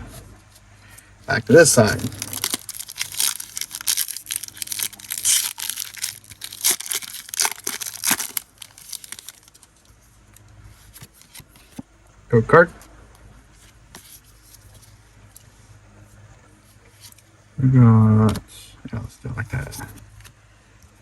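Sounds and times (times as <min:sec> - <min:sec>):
foil wrapper tearing and crinkling: 0:01.4 - 0:09.7.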